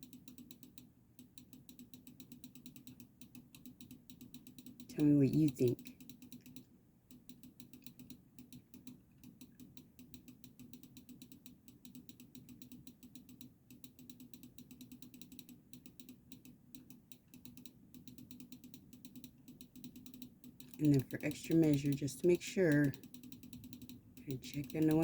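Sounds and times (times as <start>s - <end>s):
faint rapid clicking: 0.0s - 25.0s
low steady hum: 23.9s - 25.0s.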